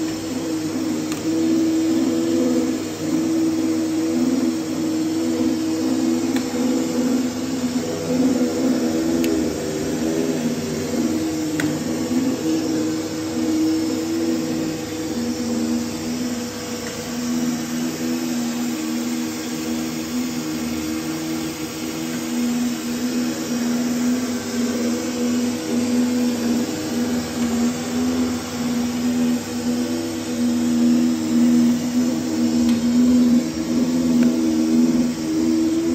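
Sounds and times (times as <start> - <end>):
laminating machine motor hum: 0.0 - 35.9.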